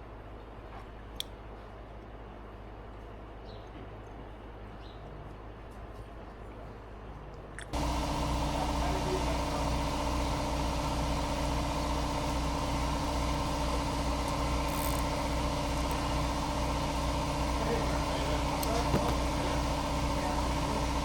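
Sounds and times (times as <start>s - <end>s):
small engine running: 7.7s - 21.0s.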